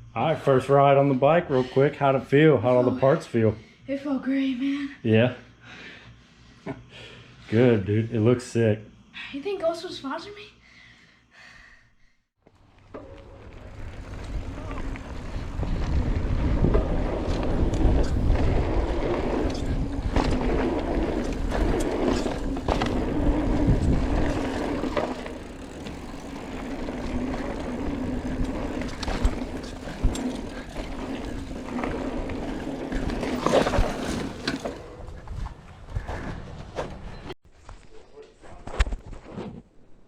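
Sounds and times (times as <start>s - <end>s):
bike tyre hum on dirt: 12.4s - 37.2s
bike knocks and rattles: 12.6s - 37.0s
wind rumbling on microphone: 13.2s - 34.0s.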